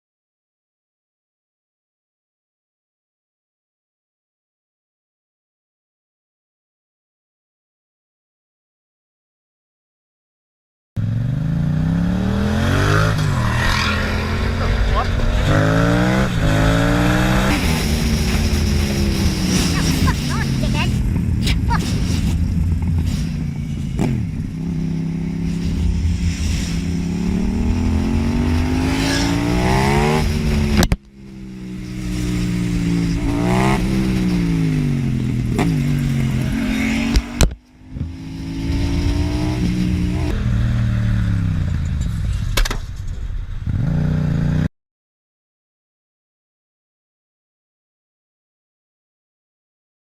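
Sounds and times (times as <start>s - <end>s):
vehicle engine accelerating: 11.0s - 44.7s.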